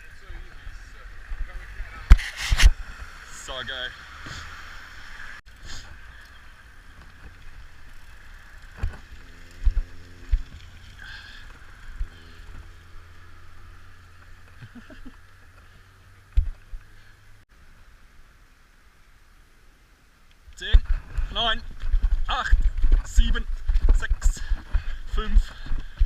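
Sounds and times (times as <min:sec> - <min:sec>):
bike tyres rumbling on trail: 0:00.0 - 0:17.4, 0:20.8 - 0:26.0
wind: 0:00.0 - 0:26.0
bike thumps and rattles: 0:08.6 - 0:10.8, 0:15.6 - 0:16.9.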